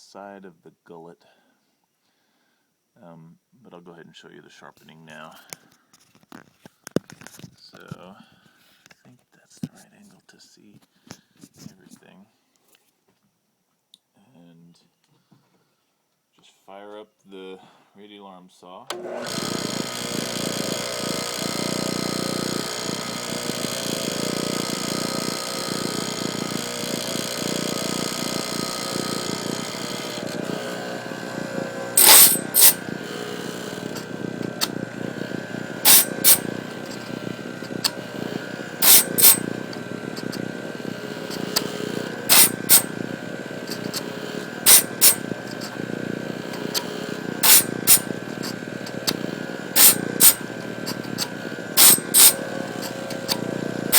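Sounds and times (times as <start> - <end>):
grinding stone on saw teeth: 18.9 - 53.9
saw motor whining: 18.9 - 53.9.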